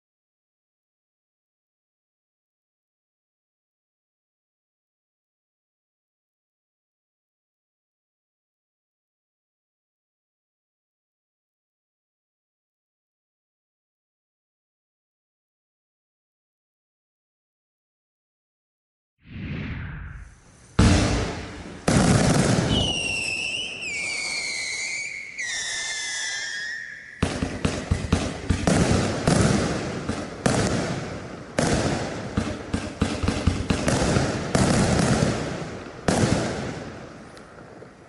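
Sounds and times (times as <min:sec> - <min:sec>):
falling firework whistles: 0:19.3 - 0:29.6
firework launch shots: 0:19.3 - 0:37.9
rapid firework bursts: 0:20.3 - 0:38.0.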